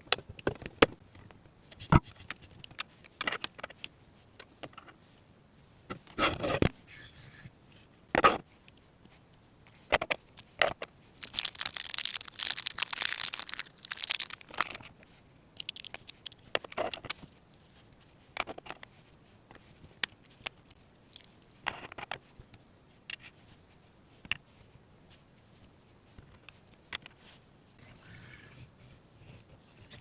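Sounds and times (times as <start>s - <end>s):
plastic toy pieces rustling: 11.2s - 15.0s, 15.6s - 17.1s.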